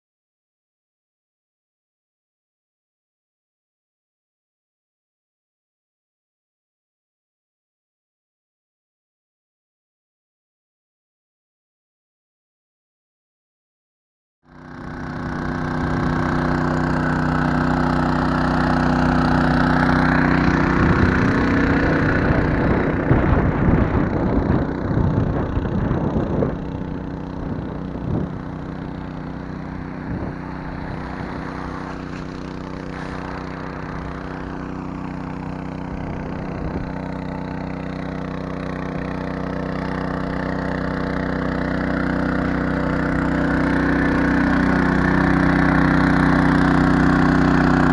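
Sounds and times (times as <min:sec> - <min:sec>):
small petrol engine running: 0:14.5 - 0:47.9.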